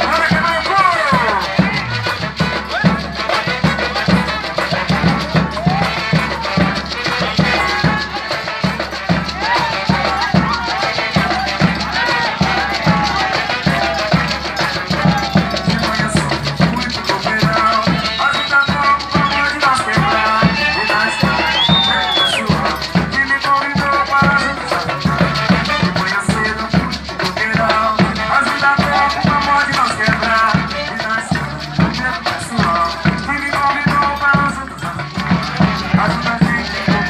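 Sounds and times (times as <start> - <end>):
driving drum beat: 0.0 - 37.0
shakers: 0.0 - 37.0
voices singing: 0.0 - 37.0.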